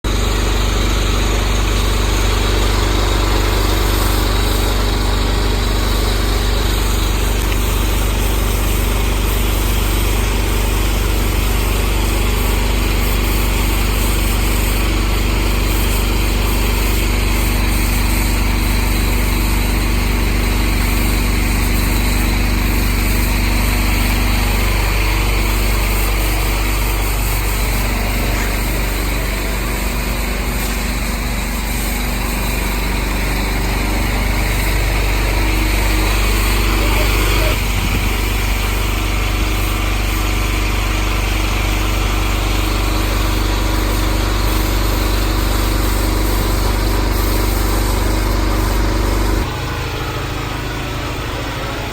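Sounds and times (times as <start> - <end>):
engine droning: 17.1 - 51.9.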